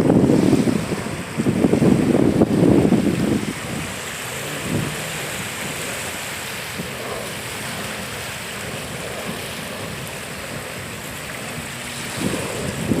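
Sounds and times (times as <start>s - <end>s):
small waves washing on shore: 0.0s - 13.0s
wind noise on microphone: 0.0s - 13.0s.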